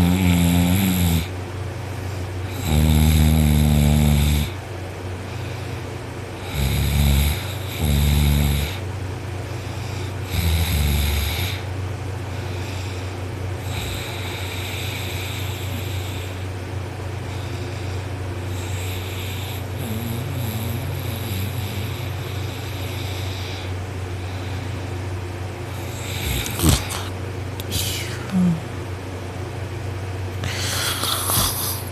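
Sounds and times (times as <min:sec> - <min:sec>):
man snoring loudly: 0:00.0 - 0:01.3, 0:02.4 - 0:04.6, 0:06.4 - 0:08.8, 0:10.0 - 0:11.7, 0:13.6 - 0:16.4, 0:18.5 - 0:23.7, 0:25.8 - 0:27.1
steady low hum: 0:00.0 - 0:31.9
quiet breathing: 0:11.5 - 0:16.5, 0:17.2 - 0:25.1, 0:25.7 - 0:28.7, 0:30.4 - 0:31.9.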